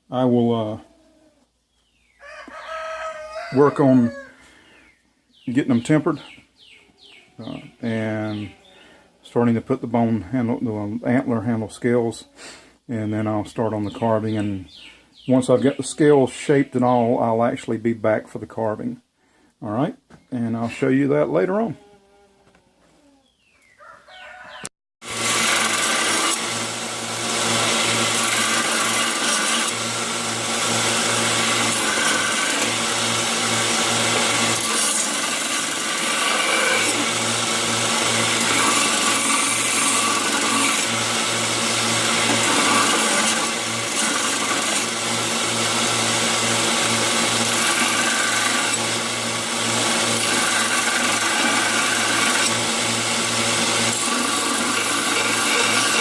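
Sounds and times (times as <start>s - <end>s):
electric grinder on steel: 25.0s - 56.0s.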